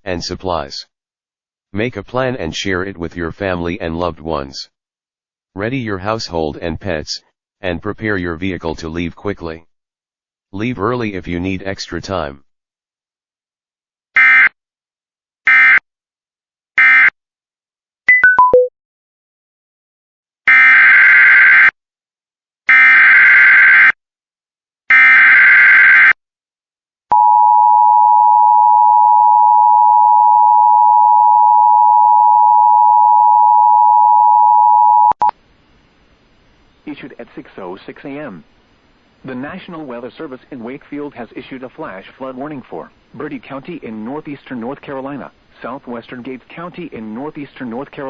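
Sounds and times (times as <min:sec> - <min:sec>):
falling four-note beep: 0:18.1 - 0:18.7
two-tone attention signal: 0:18.1 - 0:18.7.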